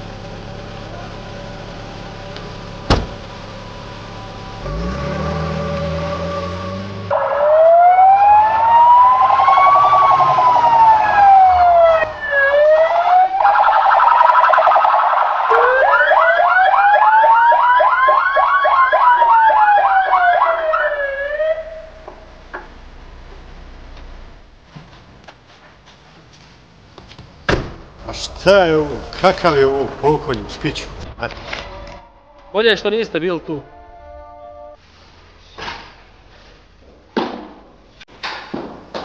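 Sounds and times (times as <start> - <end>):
low engine rumble: 0.0 - 7.2, 19.3 - 25.4, 26.0 - 34.1
siren wailing: 4.0 - 22.4, 28.4 - 30.0, 31.5 - 34.8
fast warbling siren yelp: 5.5 - 22.1.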